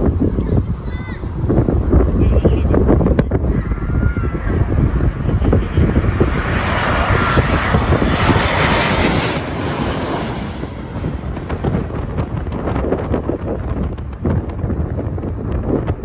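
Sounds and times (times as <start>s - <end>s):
jet airliner passing overhead: 0.0s - 16.0s
wind buffeting microphone: 0.0s - 16.0s.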